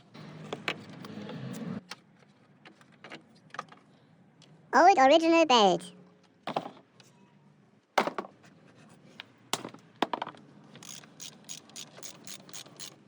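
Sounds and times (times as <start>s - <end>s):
quick even tool clicks: 10.8s - 13.0s.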